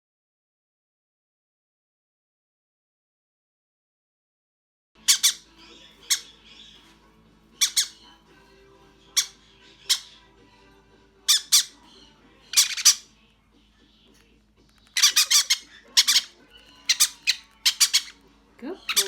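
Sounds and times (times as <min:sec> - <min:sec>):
parrot chick squawking: 0:05.0 - 0:13.2, 0:14.7 - 0:19.0.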